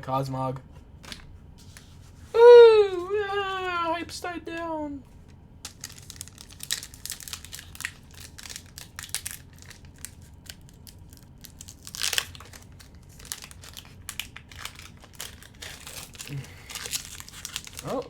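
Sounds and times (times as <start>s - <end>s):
foil card pack crinkling: 5.6s - 18.0s.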